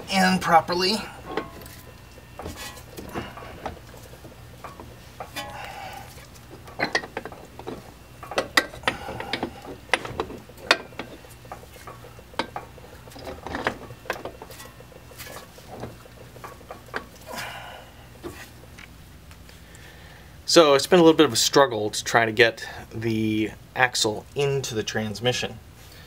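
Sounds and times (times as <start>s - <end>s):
metallic clicks and clunks: 1.2s - 17.3s.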